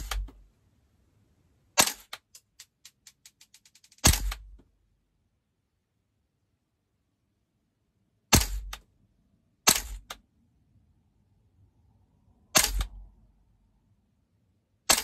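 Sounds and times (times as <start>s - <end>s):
airsoft gun shots: 0.0s - 0.3s, 1.8s - 2.1s, 4.0s - 4.6s, 8.3s - 8.8s, 9.7s - 10.1s, 12.6s - 13.0s
bolt cycling click: 0.0s - 0.4s, 1.8s - 4.6s, 9.7s - 10.2s, 12.6s - 13.0s.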